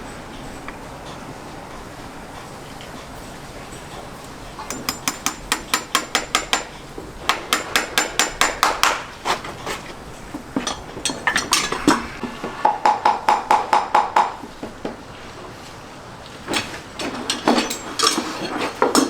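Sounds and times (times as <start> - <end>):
hammer striking metal: 4.7 - 9.1.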